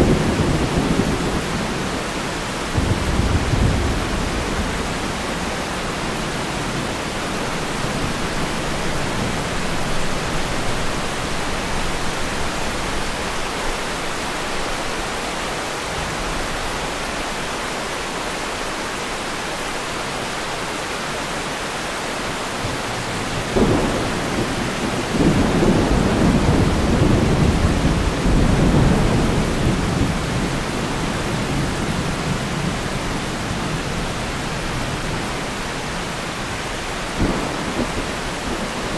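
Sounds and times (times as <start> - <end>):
thunder rumbling: 0.0 - 15.1, 22.6 - 35.5, 36.3 - 38.9
steady rain falling: 0.0 - 38.9.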